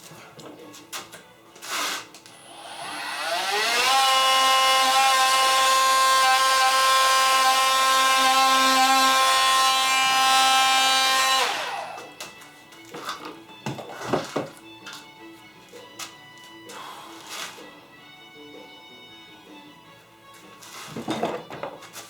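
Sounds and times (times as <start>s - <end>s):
power tool motor whining: 1.8s - 12.2s.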